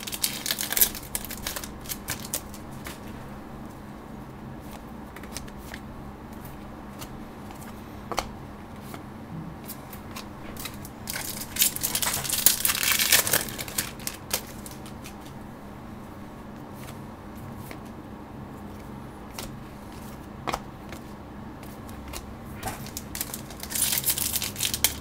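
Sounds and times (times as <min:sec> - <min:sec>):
card pack wrapper crinkling: 0:00.0 - 0:03.0, 0:10.6 - 0:15.2, 0:22.8 - 0:25.0.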